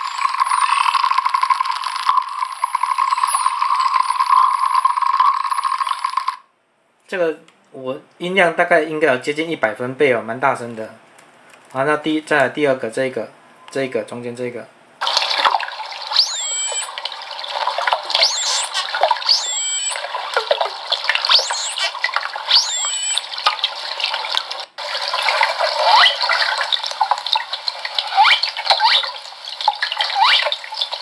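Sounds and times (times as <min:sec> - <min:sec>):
whale calls through small speaker: 0:00.0 - 0:06.5, 0:16.0 - 0:23.5, 0:25.7 - 0:26.6, 0:28.0 - 0:29.2, 0:29.8 - 0:31.0.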